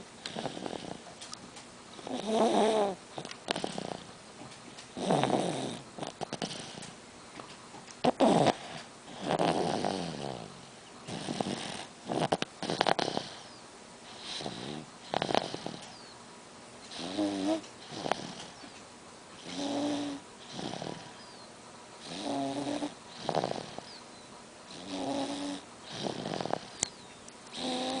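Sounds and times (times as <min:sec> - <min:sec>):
baby snoring: 0:00.2 - 0:01.1, 0:02.0 - 0:04.1, 0:05.0 - 0:06.9, 0:08.0 - 0:16.0, 0:16.9 - 0:18.6, 0:19.4 - 0:21.2, 0:22.0 - 0:24.0, 0:24.7 - 0:26.8, 0:27.6 - 0:28.0.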